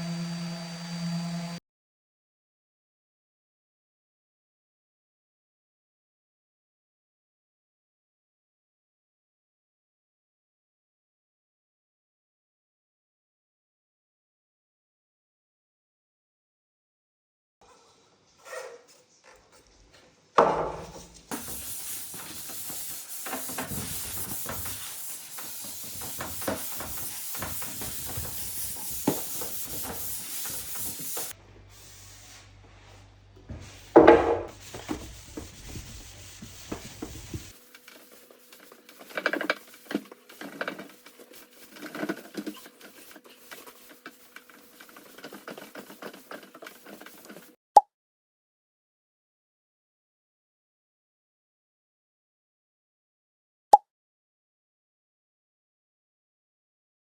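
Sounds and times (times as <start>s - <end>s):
sanding wood: 21.3s - 31.4s, 33.8s - 47.5s
rubbing strokes on wood: 21.3s - 32.5s, 33.5s - 47.5s.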